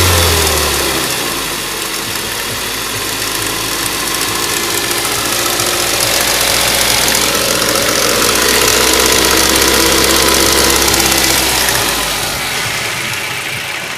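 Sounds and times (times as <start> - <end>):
engine running with knocking clatter: 0.0 - 13.9.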